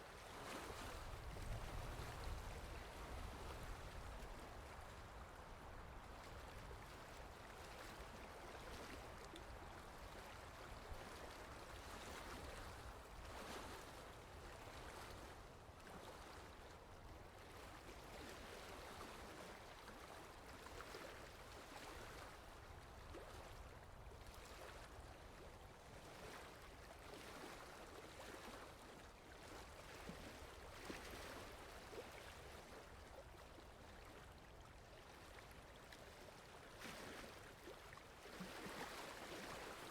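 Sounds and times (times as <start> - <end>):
water lapping: 0.1 - 39.9.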